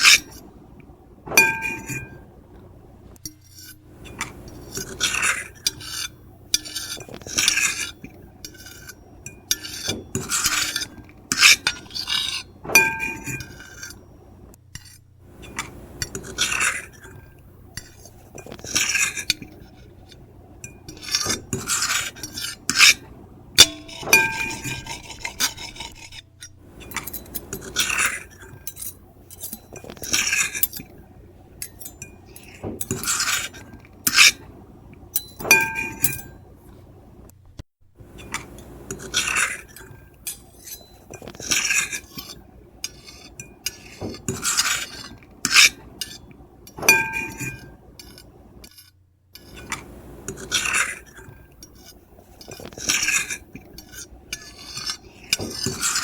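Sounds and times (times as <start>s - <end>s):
cutlery scraping ceramic plate: 0.0s - 0.5s, 1.3s - 2.3s, 3.2s - 31.0s, 31.6s - 36.8s, 38.0s - 56.0s
cutlery clinking on plate: 1.3s - 2.2s, 3.3s - 14.1s, 23.6s - 25.9s, 35.2s - 36.4s, 46.8s - 48.3s.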